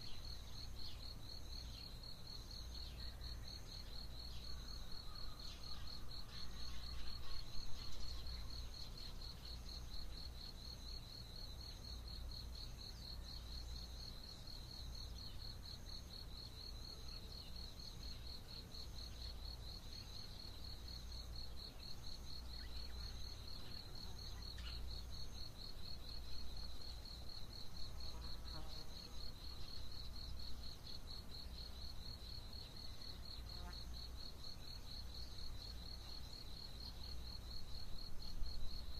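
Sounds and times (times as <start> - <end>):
higher insect chirps: 0.0 - 38.9.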